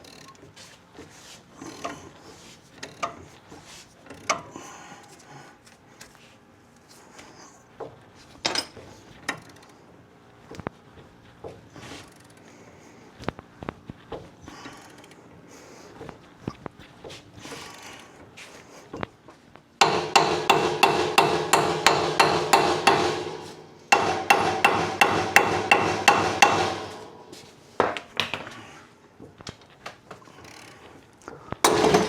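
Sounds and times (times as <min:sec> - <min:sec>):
sharp knocks: 0:19.8 - 0:28.0, 0:31.7 - 0:32.0.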